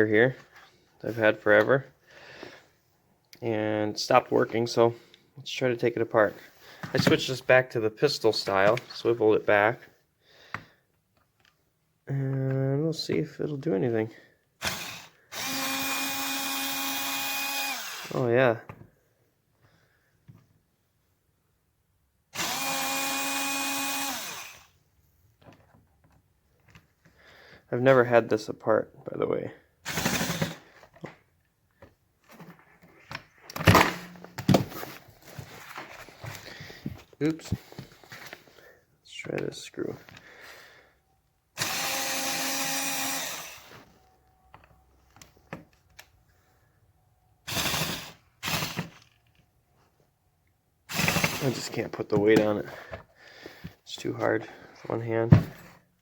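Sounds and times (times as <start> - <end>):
cordless screwdriver motor: 14.6 - 18.2, 22.4 - 24.7, 29.9 - 30.6, 41.6 - 43.7, 47.5 - 49.0, 50.9 - 51.4.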